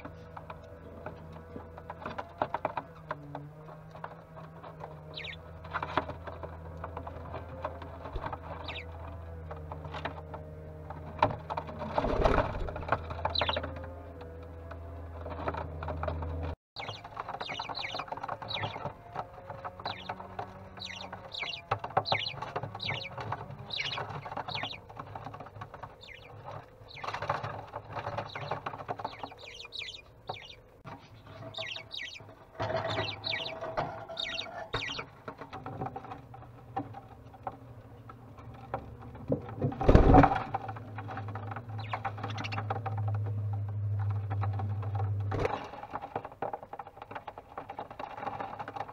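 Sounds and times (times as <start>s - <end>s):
budgies chirping: 3.6s - 10.0s, 13.1s - 13.8s, 16.8s - 35.3s, 41.4s - 43.2s.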